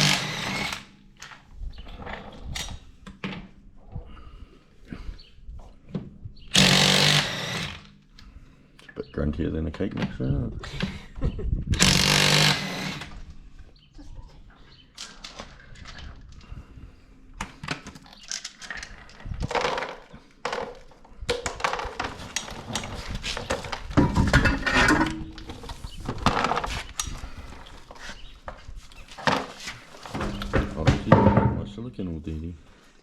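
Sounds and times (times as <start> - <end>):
metal tools clanking and scraping: 24.0 - 25.7.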